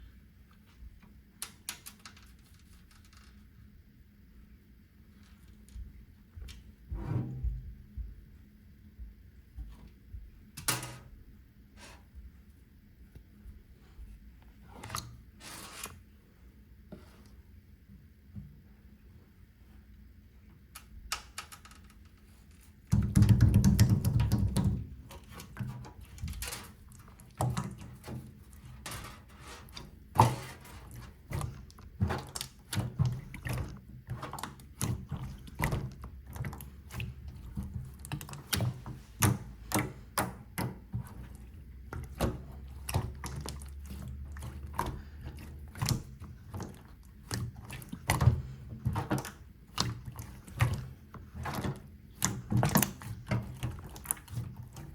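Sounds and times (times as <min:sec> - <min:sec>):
loud low handling noise: 0:06.6 - 0:08.2.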